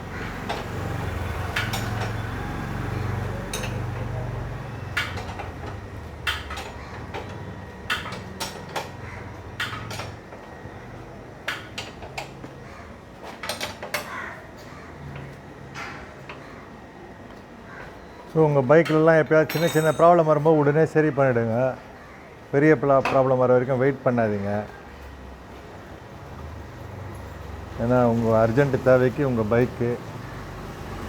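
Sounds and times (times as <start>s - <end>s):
metal tools clinking: 18.8s - 20.7s.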